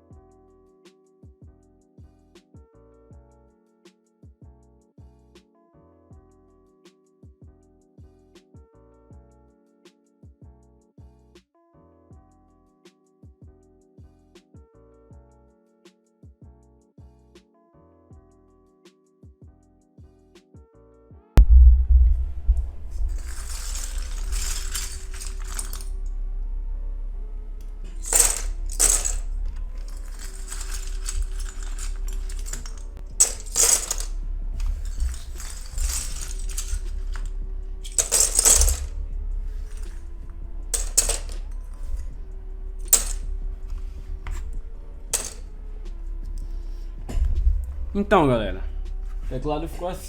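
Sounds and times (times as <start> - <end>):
background music with bass: 21.4 - 50.0
plastic pieces clattering: 22.8 - 26.1, 27.6 - 42.2, 42.8 - 45.6.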